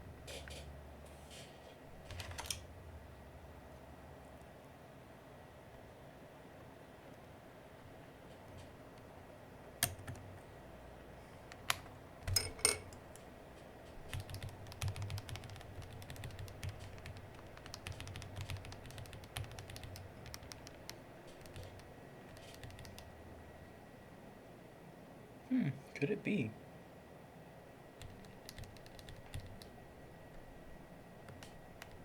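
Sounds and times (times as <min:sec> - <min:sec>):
keyboard keycaps clicking: 0:02.1 - 0:02.6, 0:09.8 - 0:10.2, 0:14.0 - 0:23.1, 0:28.0 - 0:29.8, 0:31.3 - 0:32.0.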